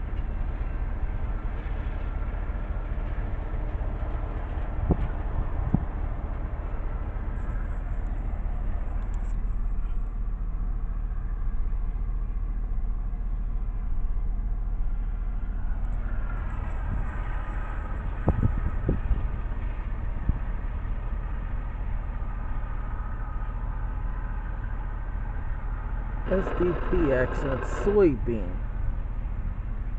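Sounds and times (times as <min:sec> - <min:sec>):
freight train cars rumbling past: 0:14.6 - 0:29.9.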